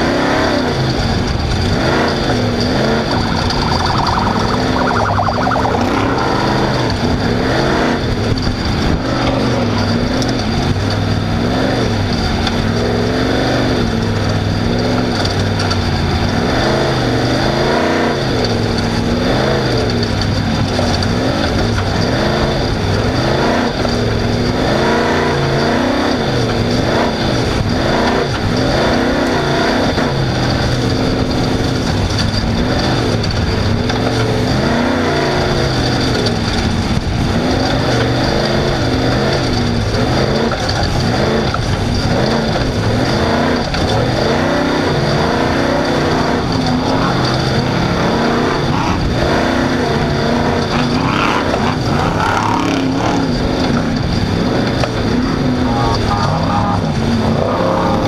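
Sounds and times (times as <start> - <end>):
race car engine revving: 0.0 - 58.0
rushing noise: 0.9 - 9.1.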